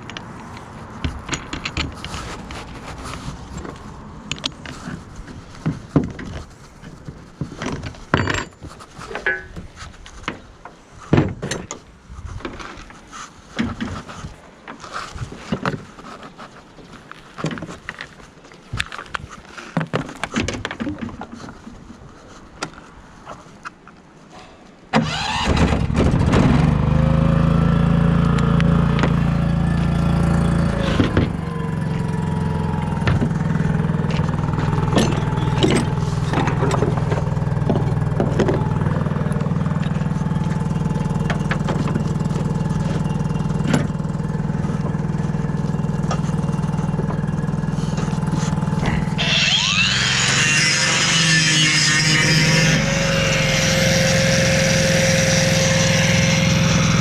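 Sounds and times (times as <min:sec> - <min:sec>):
engine starting and idling: 0:25.0 - 0:26.6.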